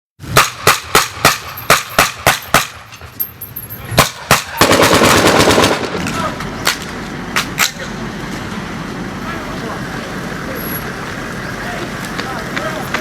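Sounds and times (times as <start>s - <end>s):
gunfire: 0.3s - 2.9s, 4.0s - 6.1s.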